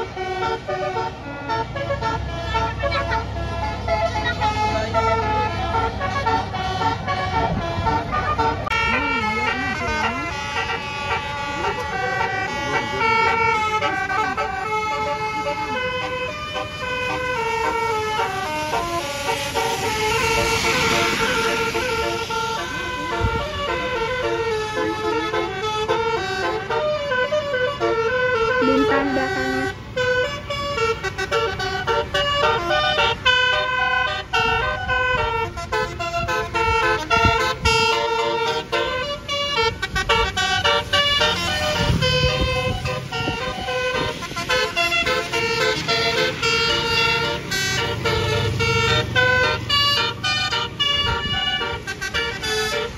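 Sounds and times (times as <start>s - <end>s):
air horn melody: 0.0s - 52.9s
rushing noise: 16.6s - 24.5s.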